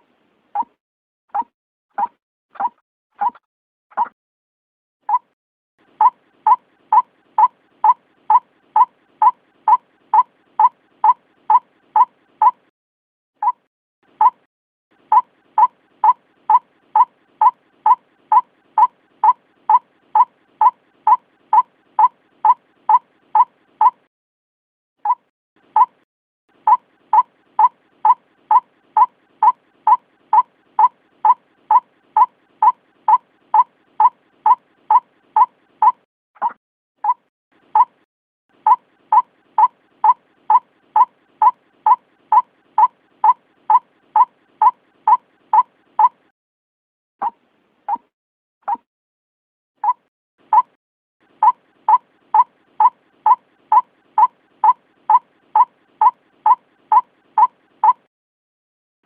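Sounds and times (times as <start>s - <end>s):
bird calling repeated notes: 5.9s - 12.7s, 13.4s - 24.1s, 25.1s - 26.0s, 26.6s - 38.0s, 38.6s - 46.3s, 49.8s - 58.1s.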